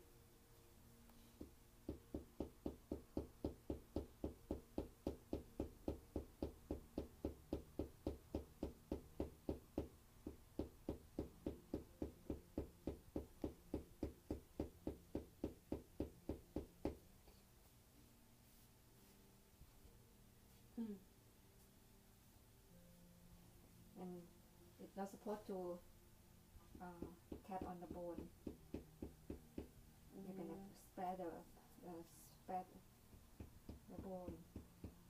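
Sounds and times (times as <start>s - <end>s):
wooden mallet knocking on peg: 26.8s - 29.7s, 33.1s - 35.0s.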